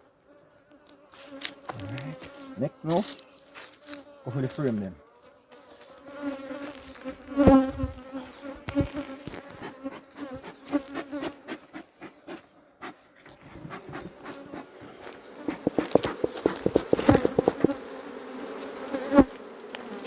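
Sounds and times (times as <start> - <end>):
bees buzzing: 0.5 - 20.0
knocks of hive frame: 7.3 - 9.4, 15.4 - 18.0.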